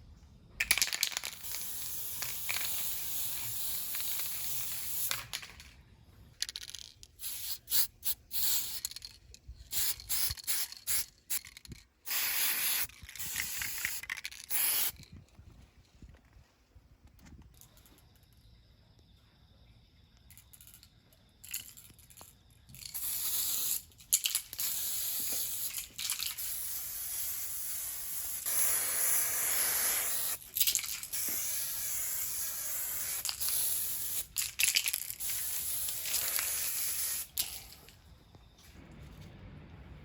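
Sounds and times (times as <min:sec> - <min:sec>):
spray-paint can hissing: 0:00.7 - 0:05.4, 0:06.5 - 0:15.0, 0:22.8 - 0:37.7.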